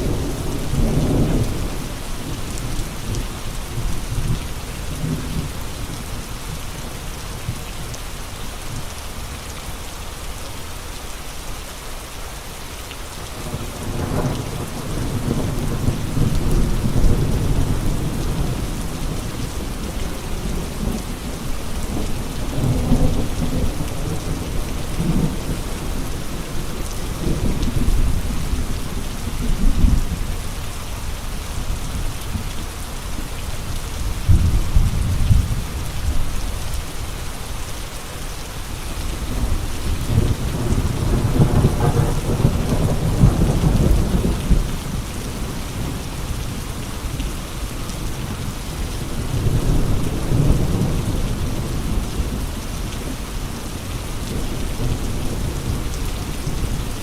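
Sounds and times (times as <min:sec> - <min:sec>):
heavy rain: 0:00.0 - 0:57.0
gusting wind: 0:13.6 - 0:57.0.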